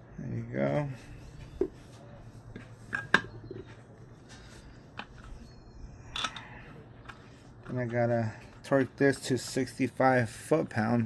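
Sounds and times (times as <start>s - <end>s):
low steady hum: 0.0s - 11.0s
metal tools clicking and knocking: 6.1s - 6.6s.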